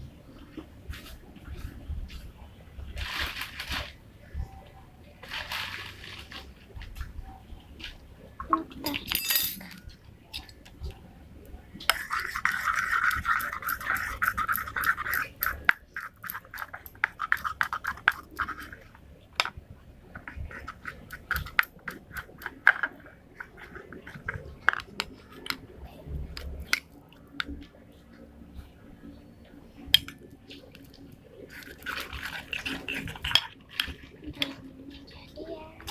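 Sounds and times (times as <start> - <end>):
spoon scraping a bowl: 11.8 - 18.9, 31.5 - 34.5.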